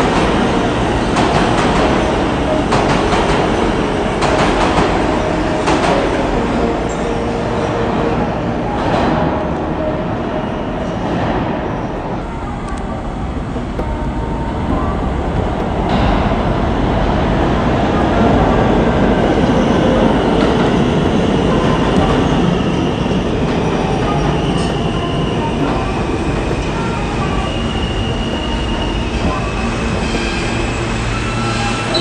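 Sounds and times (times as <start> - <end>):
subway train rumbling on rails: 0.0 - 32.0
faint high wheel squeal: 19.2 - 32.0.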